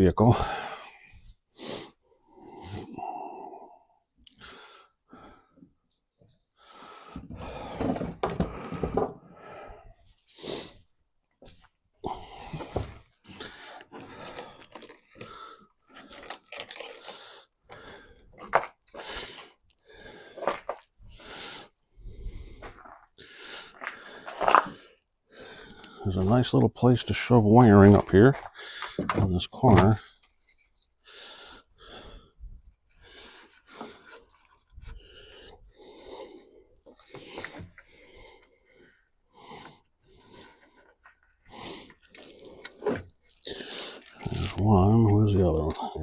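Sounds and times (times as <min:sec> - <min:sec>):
handling parts and wiring: 0:11.4 - 0:21.0, 0:25.8 - 0:31.5, 0:32.6 - 0:35.8, 0:36.8 - 0:46.0.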